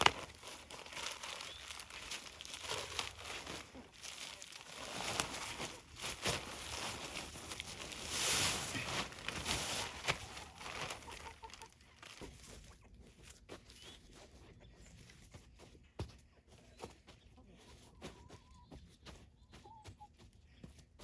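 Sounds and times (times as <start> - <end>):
compost scraping and rustling: 0.0 - 13.2
chickens clucking: 0.0 - 21.0.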